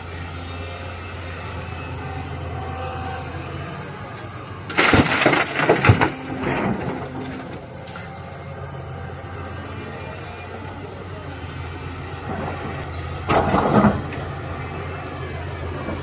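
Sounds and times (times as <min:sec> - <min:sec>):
excavator diesel engine running: 0:00.0 - 0:16.0
stones crashing and clattering: 0:04.7 - 0:07.6.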